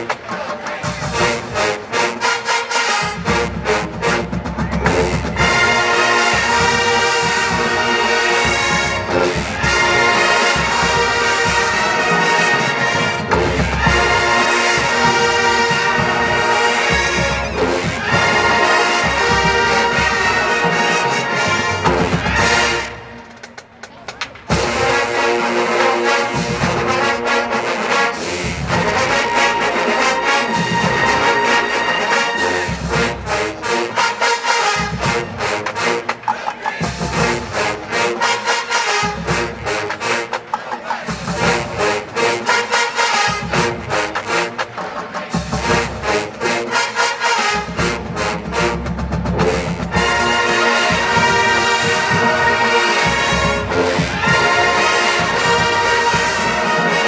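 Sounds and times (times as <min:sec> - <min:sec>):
drums: 0:00.0 - 0:57.0
marching band playing: 0:00.0 - 0:57.0
brass playing a tune: 0:00.9 - 0:23.3, 0:24.5 - 0:36.1, 0:45.6 - 0:57.0.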